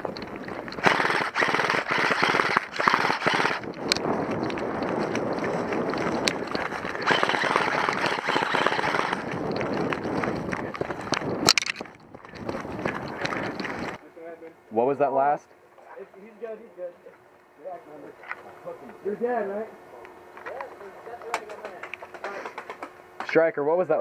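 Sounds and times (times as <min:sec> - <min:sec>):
airsoft guns firing bursts: 0:00.8 - 0:03.7, 0:05.0 - 0:11.2.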